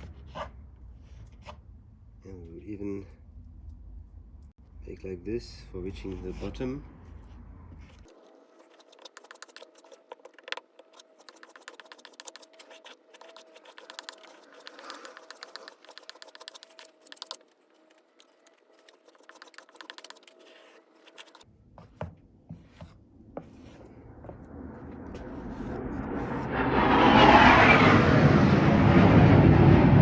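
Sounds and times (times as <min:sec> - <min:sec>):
tool scraping paste into wood: 0:08.0 - 0:17.4, 0:18.2 - 0:24.4, 0:25.2 - 0:26.5
fighter jet rumble: 0:23.8 - 0:30.0.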